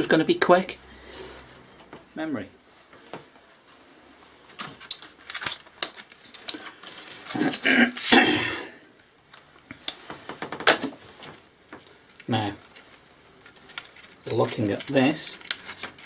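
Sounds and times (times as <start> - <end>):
plastic computer parts handling: 4.5 - 7.6, 9.3 - 16.0.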